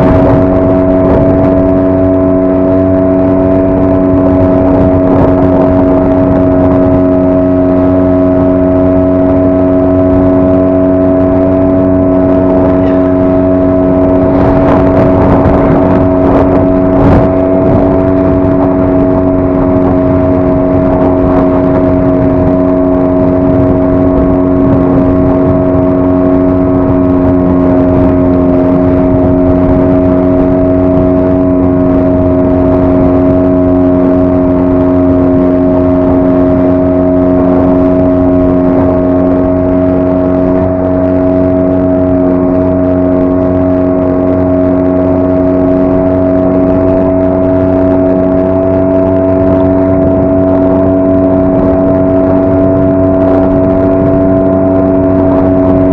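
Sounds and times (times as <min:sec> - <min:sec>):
outboard motor running: 0:00.0 - 0:55.9.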